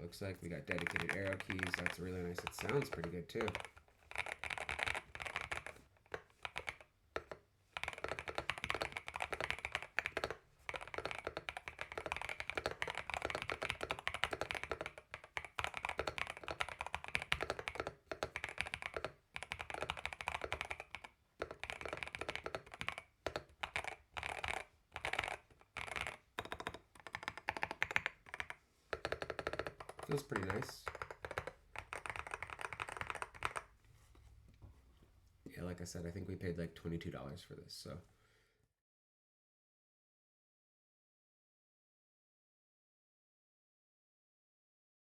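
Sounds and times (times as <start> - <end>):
typing on a mechanical keyboard: 0.3 - 33.7.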